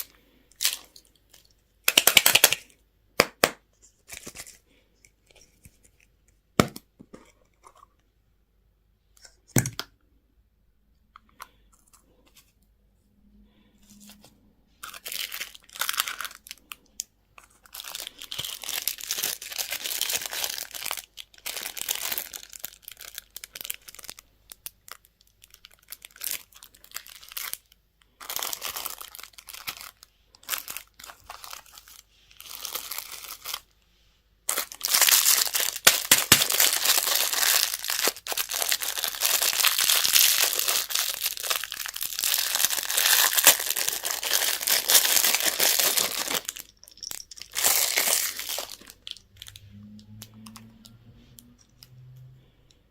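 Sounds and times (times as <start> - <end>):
candy wrappers crinkling: 0.0 - 6.2, 14.8 - 33.8, 34.5 - 52.4.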